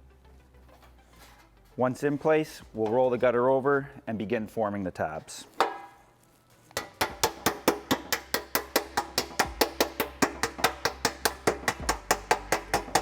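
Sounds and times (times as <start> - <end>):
wood block percussion beat: 6.8 - 13.0.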